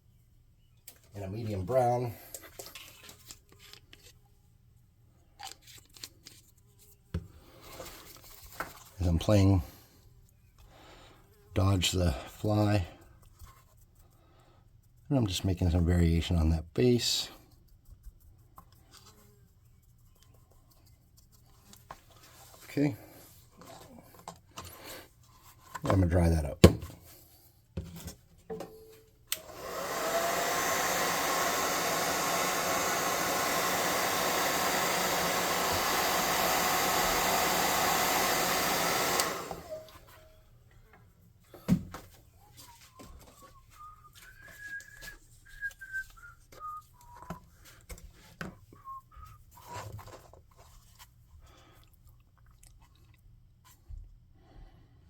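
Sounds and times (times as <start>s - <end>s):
hair dryer blowing: 29.3s - 40.1s.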